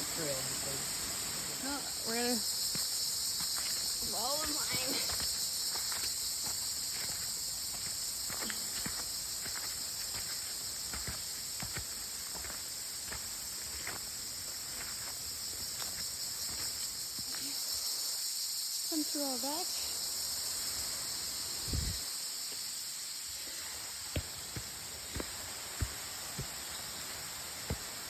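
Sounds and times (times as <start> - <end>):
insect chorus drone: 0.0 - 28.0
footsteps on a trail: 1.7 - 17.8, 24.0 - 28.0.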